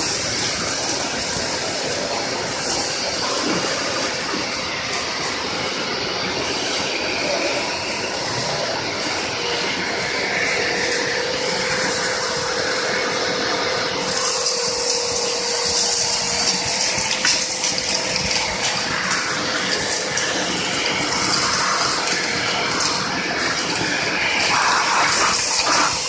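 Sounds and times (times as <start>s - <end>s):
industrial vacuum cleaner running: 0.0s - 26.0s.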